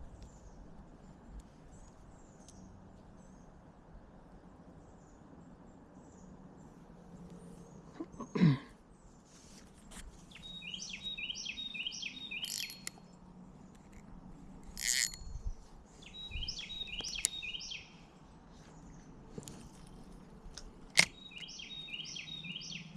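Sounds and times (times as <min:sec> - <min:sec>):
bird whistling song: 0:10.3 - 0:12.9, 0:16.0 - 0:18.0, 0:21.1 - 0:22.9.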